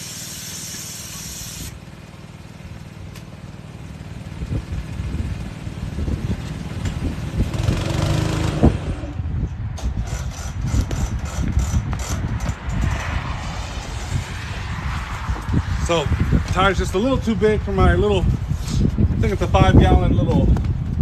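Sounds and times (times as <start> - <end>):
air compressor engine running: 0.0 - 8.8, 9.7 - 12.6.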